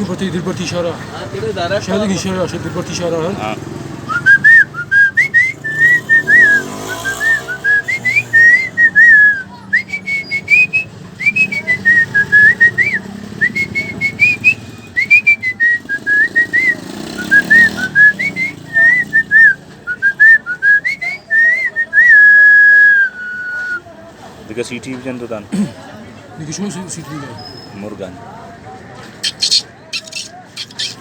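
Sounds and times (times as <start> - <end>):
boy whistling birdsong: 4.1 - 22.0, 29.2 - 31.0.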